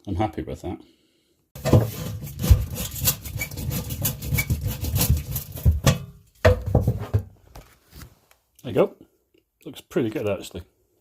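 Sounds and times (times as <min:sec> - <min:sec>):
rough rubbing and scraping: 0:01.6 - 0:05.9
knocks and clatters: 0:01.6 - 0:07.4.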